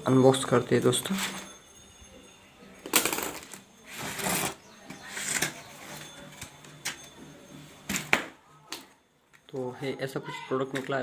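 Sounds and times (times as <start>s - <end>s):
box rustling and scraping: 2.9s - 7.0s.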